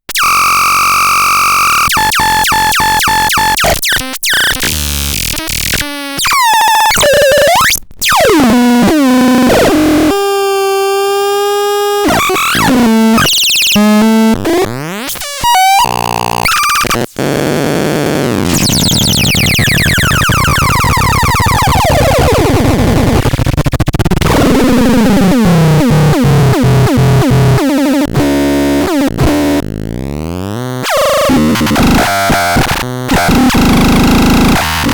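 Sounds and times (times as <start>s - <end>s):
glitchy synthesizer tones: 12.0s - 34.9s.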